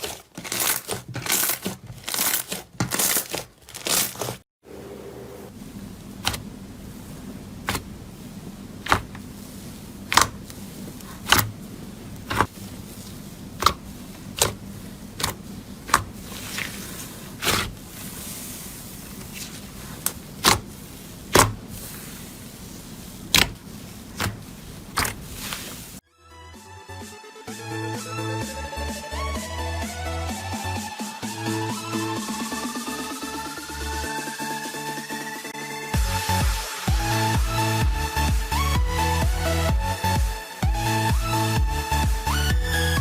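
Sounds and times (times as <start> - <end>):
faint steady hum: 4.7 - 26.0
slime clicks: 8.9 - 9.1, 10.1 - 10.4.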